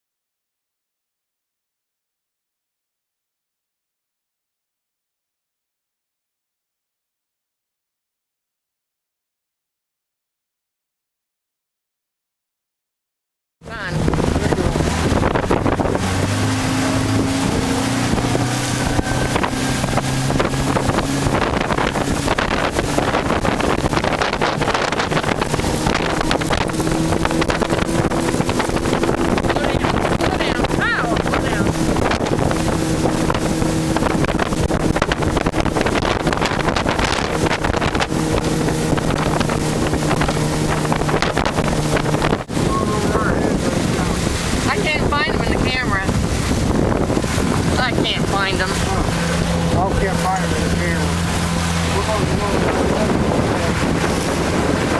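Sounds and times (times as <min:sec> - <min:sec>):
motorboat engine running: 0:13.6 - 0:54.9
water against hull: 0:13.6 - 0:54.9
wind buffeting microphone: 0:13.6 - 0:54.9.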